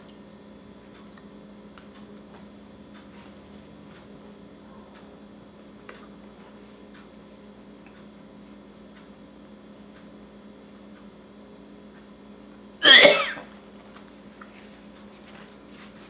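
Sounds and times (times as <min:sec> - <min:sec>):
woman coughing loudly: 0:12.8 - 0:13.5.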